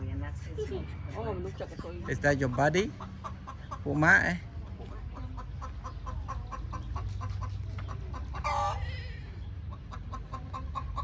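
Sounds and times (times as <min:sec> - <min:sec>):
chickens clucking: 0:00.0 - 0:11.0
chicken squawk: 0:05.2 - 0:08.9.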